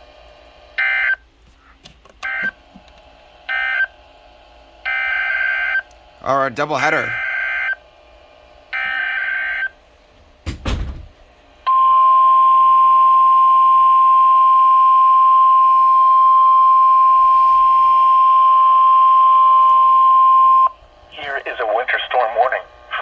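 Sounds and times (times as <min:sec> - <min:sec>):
loud alarm tone: 0:02.3 - 0:02.6, 0:03.5 - 0:03.9, 0:04.8 - 0:05.9, 0:06.8 - 0:07.8, 0:08.8 - 0:09.7, 0:11.7 - 0:20.8
thump: 0:10.4 - 0:11.2.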